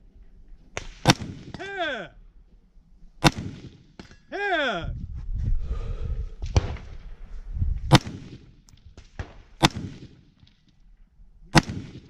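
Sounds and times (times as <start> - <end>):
gunshots: 0.8 - 1.8, 3.2 - 4.0, 7.9 - 10.4, 11.5 - 12.0.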